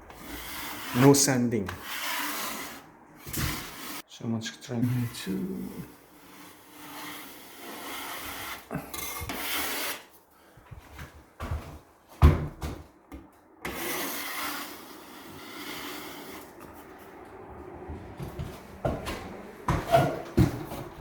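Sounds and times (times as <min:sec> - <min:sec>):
taping knife scraping compound: 0:00.0 - 0:04.0, 0:04.8 - 0:10.2, 0:13.6 - 0:16.7.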